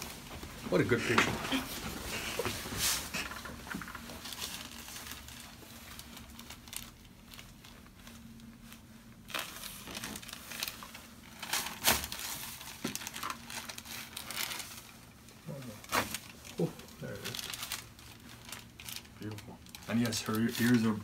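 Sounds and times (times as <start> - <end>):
paper crinkling and rustling: 0.0 - 21.0.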